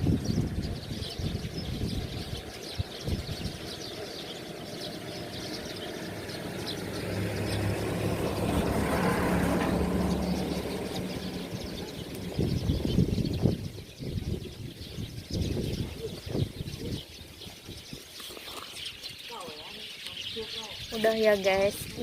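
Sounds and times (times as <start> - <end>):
small birds chirping: 0.0 - 22.0
vehicle engine passing by: 3.2 - 13.9.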